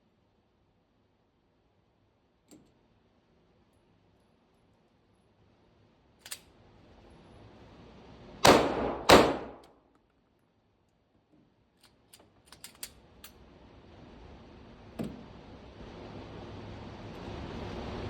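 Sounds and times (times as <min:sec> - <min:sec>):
pistol shots ringing: 0:08.4 - 0:09.6.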